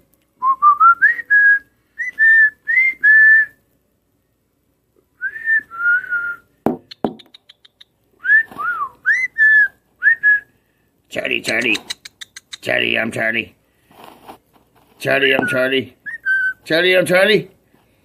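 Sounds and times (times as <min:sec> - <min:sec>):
parrot whistling: 0:00.5 - 0:03.5, 0:05.2 - 0:10.5, 0:15.2 - 0:16.7
sharp clicks: 0:06.8 - 0:08.0, 0:11.4 - 0:12.7.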